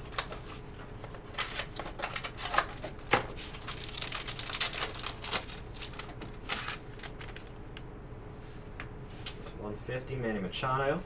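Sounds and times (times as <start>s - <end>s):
trading cards clicking and rustling: 0.0s - 7.8s.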